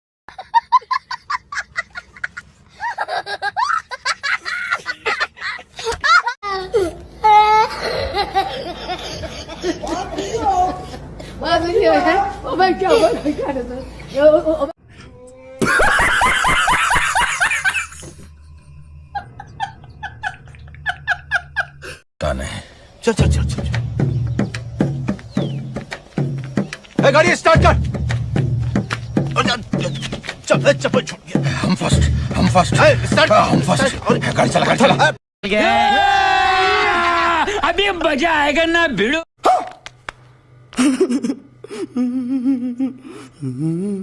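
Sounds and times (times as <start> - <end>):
hearty laugh: 0.3 - 6.4, 7.7 - 11.2, 15.6 - 18.2, 19.1 - 22.0, 40.8 - 43.0
fast rhythmic giggle: 7.7 - 11.0
laughing sound effect: 15.6 - 18.2, 40.7 - 44.0
steady low hum: 40.0 - 44.0.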